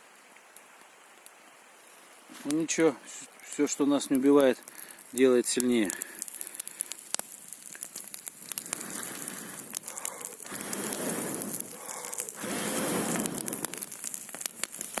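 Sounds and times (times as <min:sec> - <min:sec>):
campfire crackling with pops: 0:00.1 - 0:01.6, 0:02.2 - 0:15.0
rushing noise: 0:10.4 - 0:14.0.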